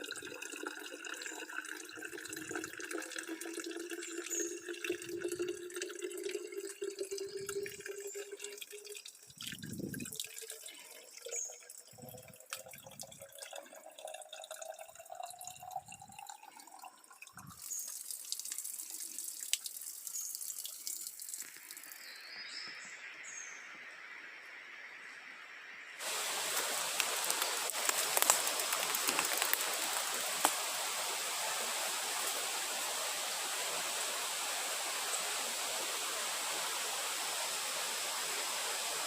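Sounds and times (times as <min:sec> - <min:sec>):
water trickling and rushing: 0:00.0 - 0:24.1, 0:26.0 - 0:39.0.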